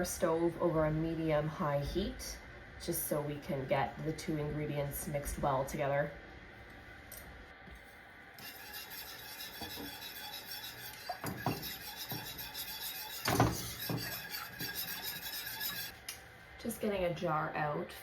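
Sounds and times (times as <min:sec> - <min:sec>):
utensil scraping a pot: 0:08.4 - 0:16.0.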